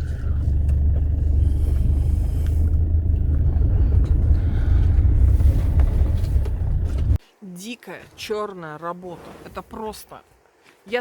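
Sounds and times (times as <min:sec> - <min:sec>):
car engine and road noise: 0:00.0 - 0:07.2.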